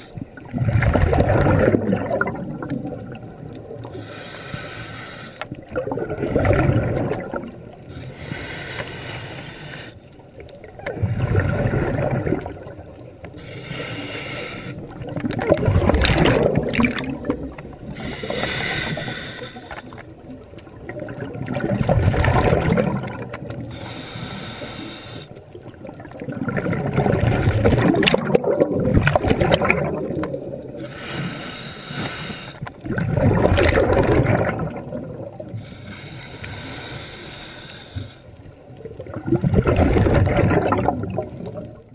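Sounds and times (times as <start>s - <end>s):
exhaled air bubbling: 0.0s - 41.9s
regulator breathing underwater: 3.8s - 5.8s, 6.5s - 10.2s, 13.2s - 15.2s, 16.0s - 20.2s, 22.5s - 25.6s, 29.1s - 38.4s.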